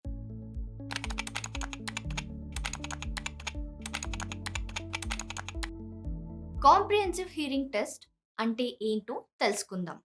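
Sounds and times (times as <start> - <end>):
keyboard typing clicks: 0.9 - 5.7.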